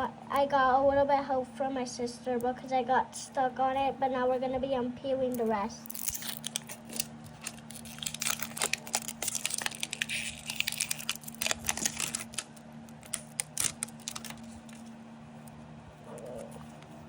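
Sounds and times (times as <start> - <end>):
plastic wrapping crinkling and tearing: 5.8 - 14.9.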